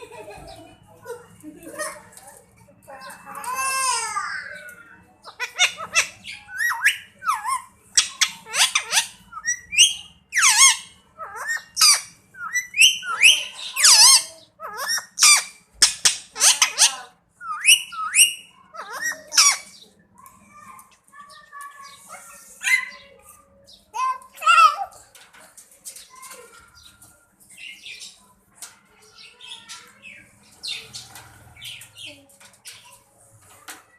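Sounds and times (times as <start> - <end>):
parrot squawking: 5.2 - 19.8, 22.0 - 24.9.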